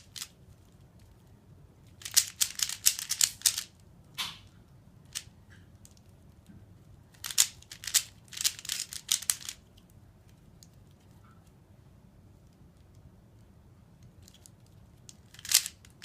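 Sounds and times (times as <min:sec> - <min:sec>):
puzzle cube plastic clicks: 0:00.0 - 0:00.7, 0:01.9 - 0:04.4, 0:07.2 - 0:09.9, 0:14.0 - 0:16.0.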